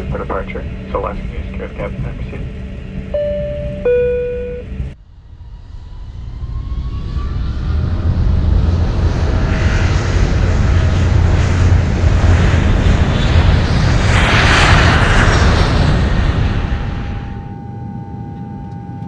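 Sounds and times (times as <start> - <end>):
jet engines spooling up: 0.0 - 4.0, 4.6 - 19.0.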